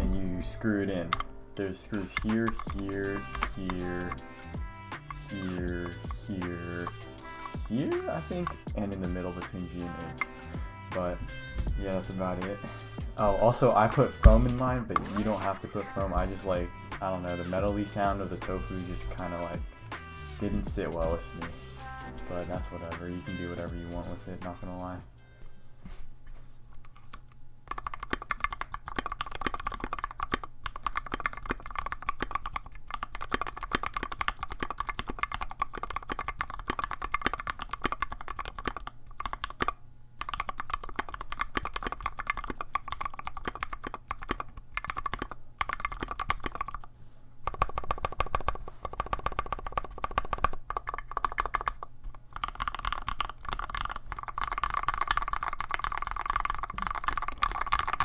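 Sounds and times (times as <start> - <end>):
mechanical keyboard typing: 2.0 - 4.2, 27.7 - 46.9, 47.5 - 58.0.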